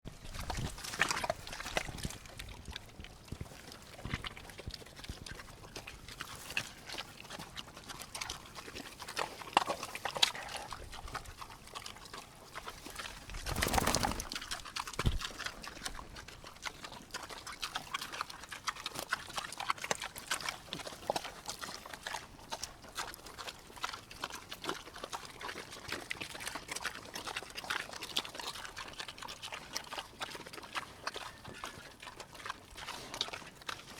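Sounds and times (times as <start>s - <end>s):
pigs eating and slurping: 0.1s - 33.9s.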